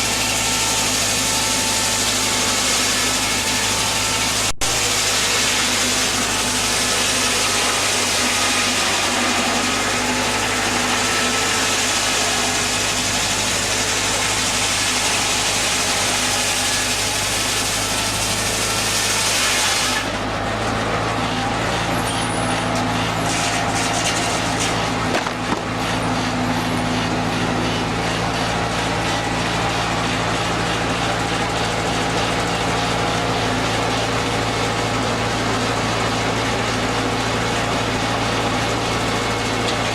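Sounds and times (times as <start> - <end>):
sawmill engine humming: 0.0 - 39.9.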